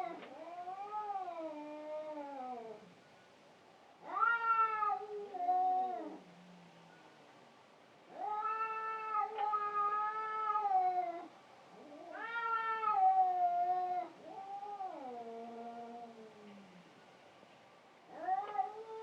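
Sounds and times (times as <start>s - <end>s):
cats yowling: 0.0s - 2.8s, 4.0s - 6.3s, 8.1s - 16.6s, 18.1s - 19.0s.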